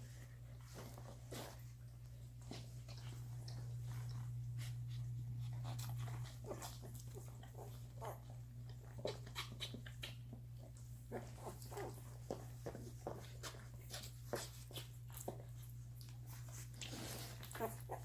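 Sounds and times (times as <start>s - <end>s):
puppies squeaking and whimpering: 16.9s - 18.0s.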